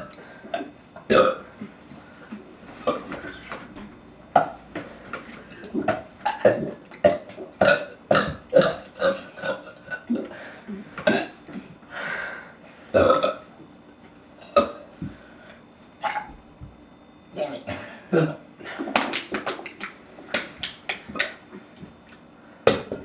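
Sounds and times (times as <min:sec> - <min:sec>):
people belching: 0:01.1 - 0:01.6, 0:05.7 - 0:10.3, 0:13.0 - 0:13.5.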